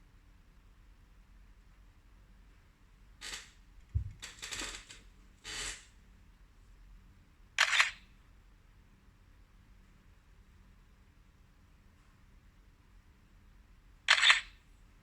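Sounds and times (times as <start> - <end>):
phone being handled knock: 4.0 - 4.4
camera shutter clicks: 7.6 - 8.0, 14.1 - 14.5.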